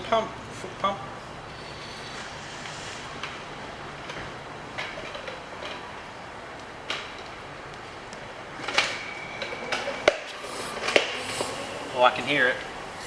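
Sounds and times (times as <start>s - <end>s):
foot pump clunks and air puffs: 8.6s - 13.0s.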